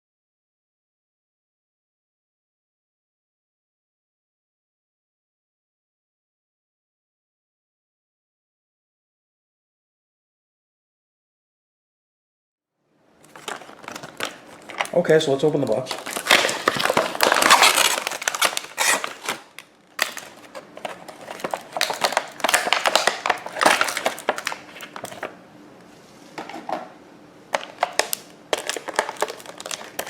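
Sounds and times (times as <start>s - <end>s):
cardboard packaging rustling: 13.2s - 25.4s, 27.6s - 30.0s.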